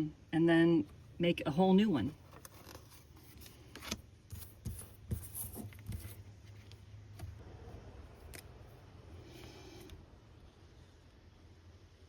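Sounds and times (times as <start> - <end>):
paper rustling: 2.2 - 6.8.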